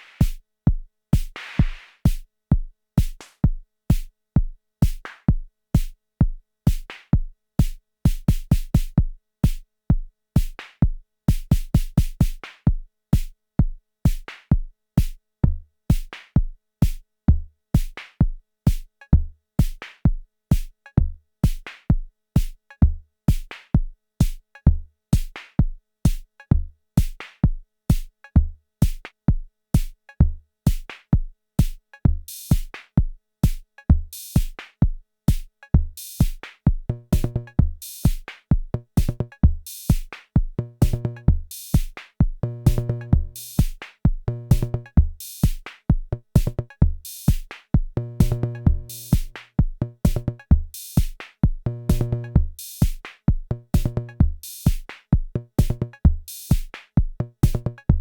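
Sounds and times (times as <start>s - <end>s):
drum machine beat: 1.2s - 2.2s, 27.9s - 29.0s, 29.8s - 30.9s, 31.6s - 58.0s
deep kick drum: 17.3s - 17.5s, 19.2s - 19.8s, 21.0s - 21.6s, 26.1s - 27.2s, 30.2s - 34.5s, 35.3s - 58.0s.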